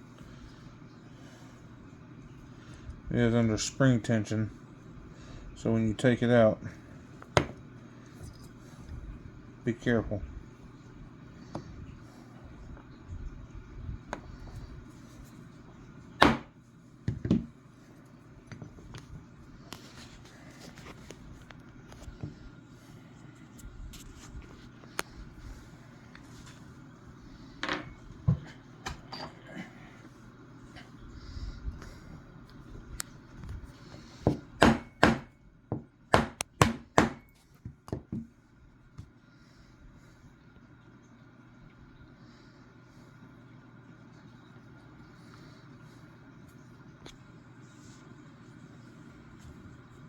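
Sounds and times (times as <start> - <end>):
hammer tapping a pin punch: 36.1 - 37.3.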